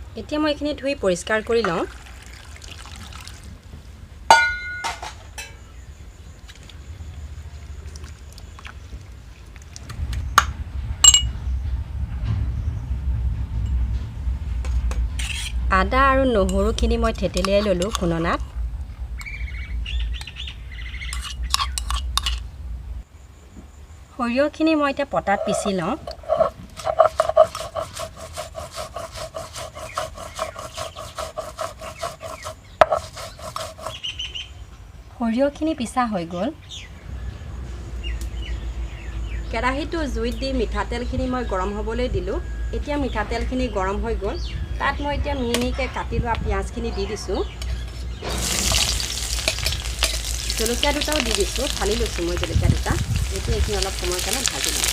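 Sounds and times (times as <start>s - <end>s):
pestle clinks: 4.3s - 5.6s
stone roller scraping grinding stone: 15.2s - 15.6s, 25.2s - 34.0s, 47.6s - 54.9s.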